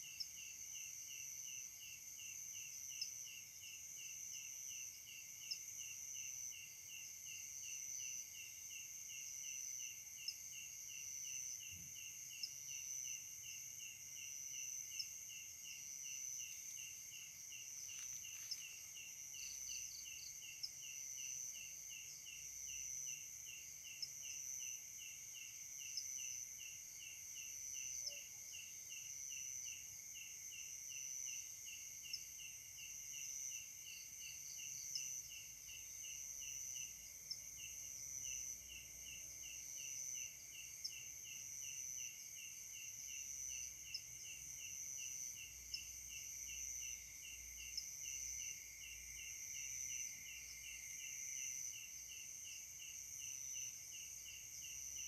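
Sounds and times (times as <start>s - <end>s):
insects trilling: 9.8s - 30.2s.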